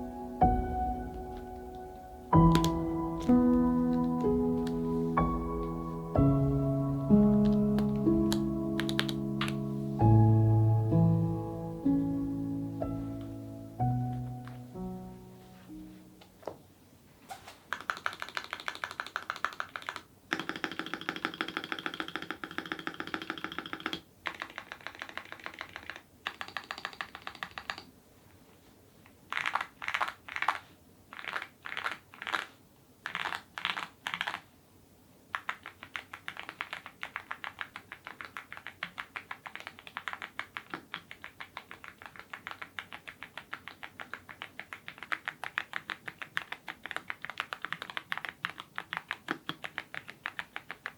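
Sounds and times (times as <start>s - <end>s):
fast mechanical keyboard typing: 2.4s - 4.3s, 7.4s - 9.6s, 17.7s - 27.9s, 29.3s - 34.5s, 35.3s - 50.9s.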